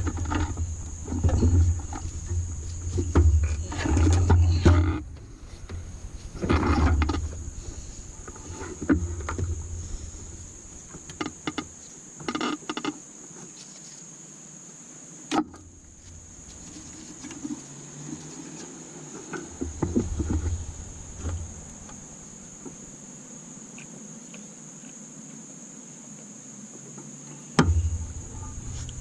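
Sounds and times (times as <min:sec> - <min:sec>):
heavier thumps: 0:19.5 - 0:23.0, 0:27.6 - 0:29.0.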